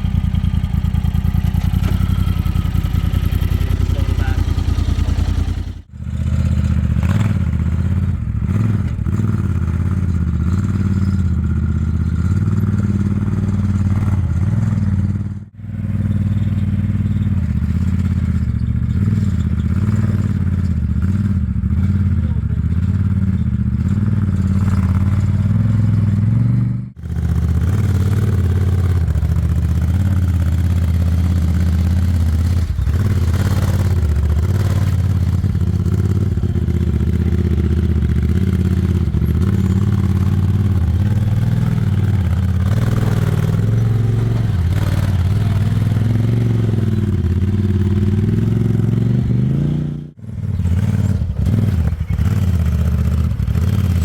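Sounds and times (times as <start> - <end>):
engine running under load: 0.0 - 54.0.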